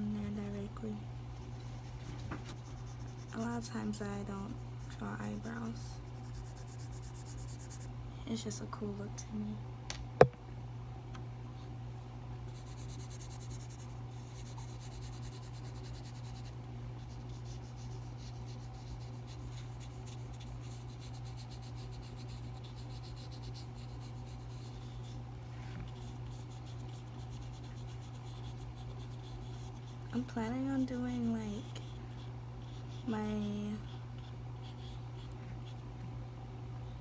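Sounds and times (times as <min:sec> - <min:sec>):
low steady hum: 0:00.0 - 0:37.0
brush scratching on paper: 0:01.2 - 0:07.9, 0:12.5 - 0:30.0, 0:31.5 - 0:33.1, 0:33.8 - 0:35.8.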